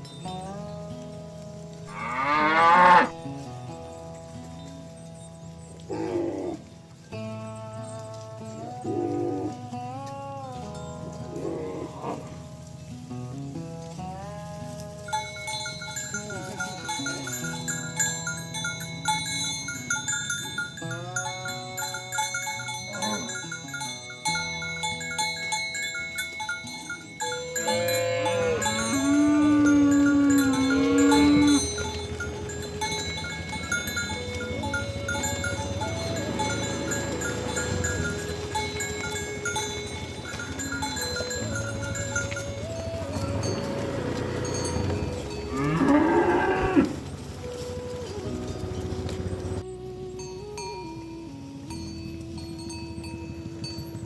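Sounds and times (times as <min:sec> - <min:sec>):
cattle mooing: 0:01.9 - 0:03.2, 0:05.9 - 0:06.8, 0:08.3 - 0:09.9, 0:11.2 - 0:12.5, 0:22.9 - 0:23.6, 0:27.3 - 0:49.6
held pitched tones: 0:20.8 - 0:54.0.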